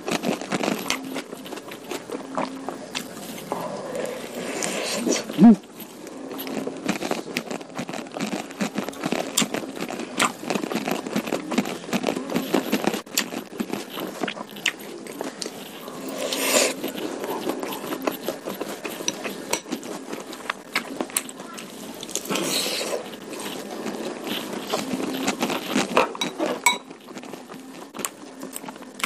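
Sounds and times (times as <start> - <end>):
person chewing food: 0.0 - 29.0.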